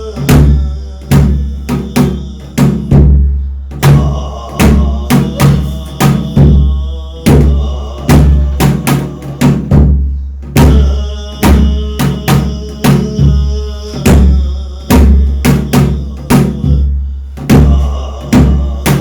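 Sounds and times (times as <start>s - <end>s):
deep drum strokes ringing: 0.0s - 19.0s.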